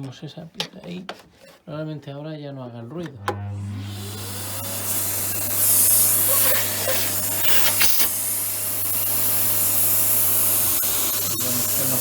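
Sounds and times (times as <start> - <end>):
vacuum cleaner motor whine: 3.0 - 12.0.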